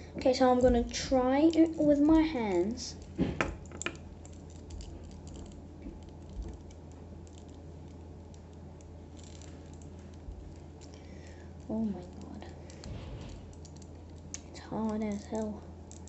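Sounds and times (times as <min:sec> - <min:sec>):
plastic pieces clicking and rattling: 0:01.5 - 0:11.0, 0:13.5 - 0:16.0.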